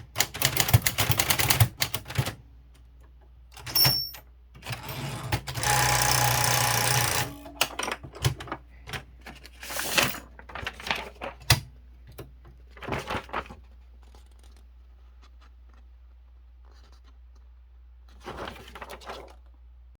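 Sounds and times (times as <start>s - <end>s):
typewriter clicks and knocks: 0.0s - 2.4s, 3.5s - 9.1s
typewriter mechanical rush: 0.0s - 2.4s, 4.6s - 8.4s, 9.6s - 11.0s.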